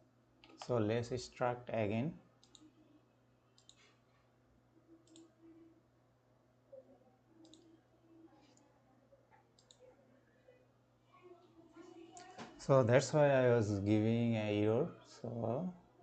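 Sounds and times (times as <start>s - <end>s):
low steady hum: 0.0s - 16.0s
computer mouse clicks: 2.4s - 2.7s, 3.6s - 3.9s, 5.0s - 5.3s, 7.4s - 7.7s, 9.6s - 9.8s.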